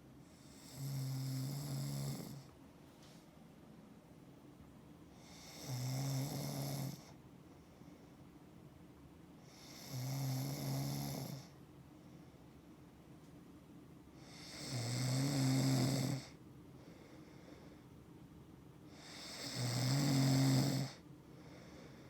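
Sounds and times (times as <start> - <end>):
low buzzing snores: 0.2 - 2.6, 5.1 - 8.0, 9.4 - 11.6, 14.1 - 17.8, 18.9 - 22.0.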